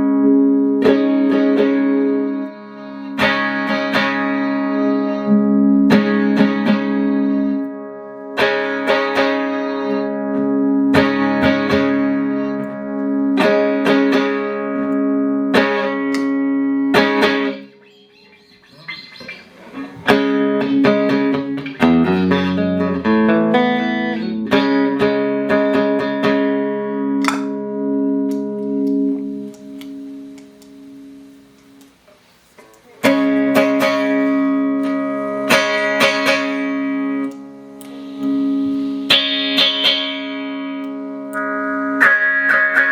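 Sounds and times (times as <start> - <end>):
single guitar notes: 0.0 - 17.7, 27.0 - 31.2, 32.6 - 42.9
electric guitar strummed chords: 0.0 - 17.8, 18.9 - 32.0, 33.0 - 42.9.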